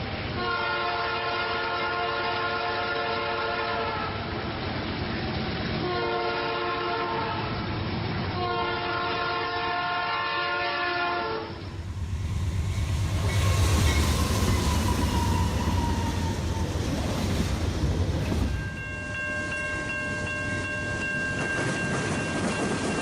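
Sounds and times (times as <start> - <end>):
moving train rumble: 0.0 - 23.0
locomotive air horn blasts: 0.4 - 4.2, 5.8 - 7.5, 8.4 - 12.0.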